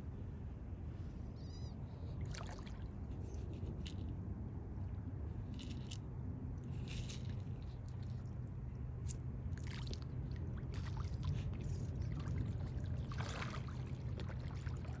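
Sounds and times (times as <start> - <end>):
small water splashes: 2.2 - 3.0, 9.5 - 15.0.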